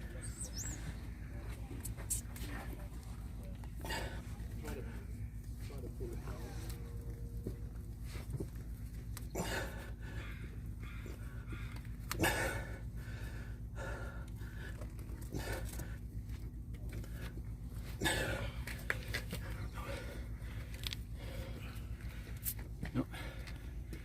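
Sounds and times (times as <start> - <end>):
steady low hum: 0.0 - 24.0
person breathing hard: 9.3 - 16.2, 17.0 - 24.0.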